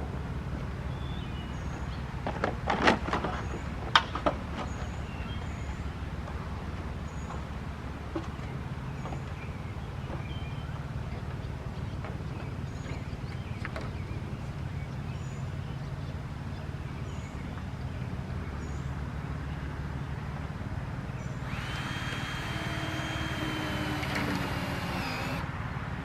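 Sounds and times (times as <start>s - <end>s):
steady low hum: 4.4s - 26.0s
power tool whining: 21.4s - 25.5s.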